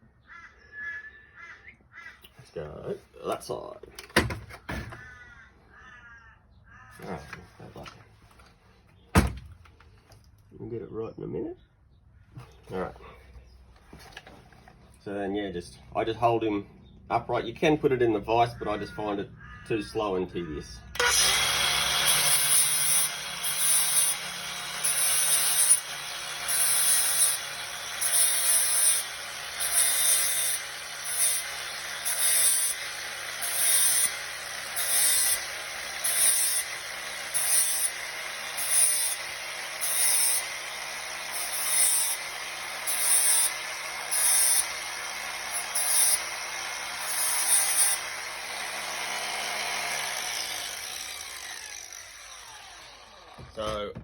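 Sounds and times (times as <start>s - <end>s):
grinder motor spinning down: 20.9s - 53.7s
electric grinder running: 21.0s - 53.8s.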